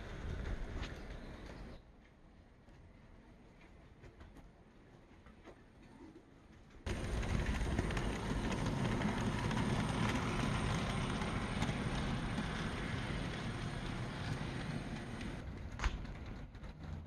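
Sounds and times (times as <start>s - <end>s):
model train rumbling on track: 0.0s - 1.8s, 6.9s - 17.0s.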